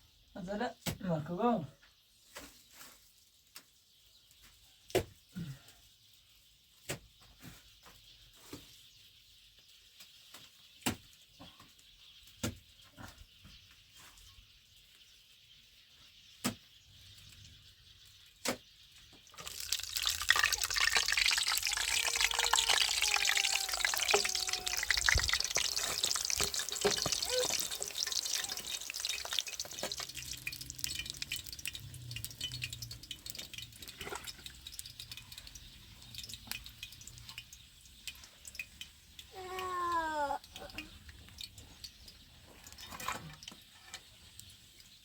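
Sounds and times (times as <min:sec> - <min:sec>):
food frying sizzle: 0:19.0 - 0:45.0
small clicks and knocks: 0:25.1 - 0:45.0.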